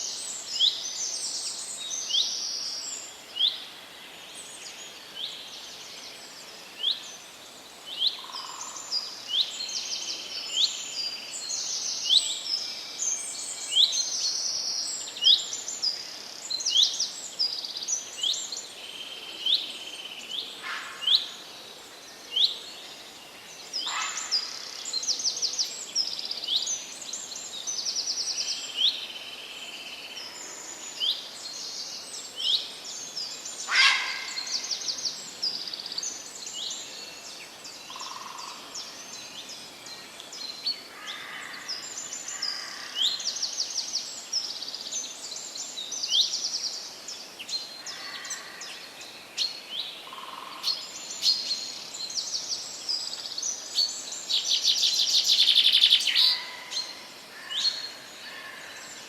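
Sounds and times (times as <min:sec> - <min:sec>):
faint steady hiss: 0:00.0 - 0:59.0
birds singing: 0:22.1 - 0:59.0.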